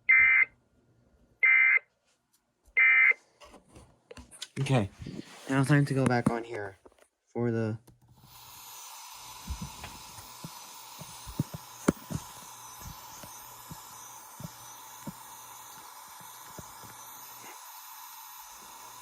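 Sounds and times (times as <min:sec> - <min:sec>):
radio static hiss: 0:09.1 - 0:19.0.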